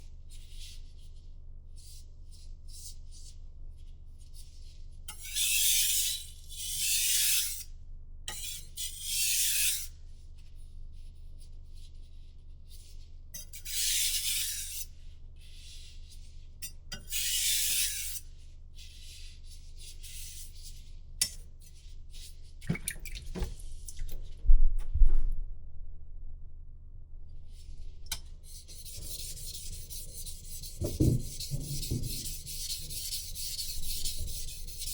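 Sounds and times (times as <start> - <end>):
knife scraping on whetstone: 13.4 - 14.9, 17.0 - 18.2.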